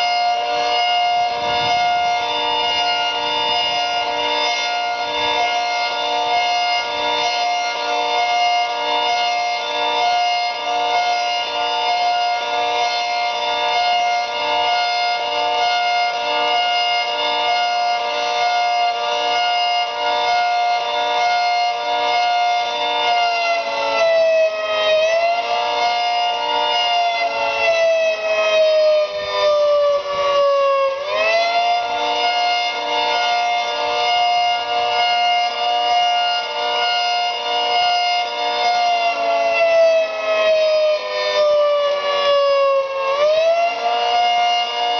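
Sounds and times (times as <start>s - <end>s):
outdoor warning siren multi-tone chord: 0.0s - 44.9s.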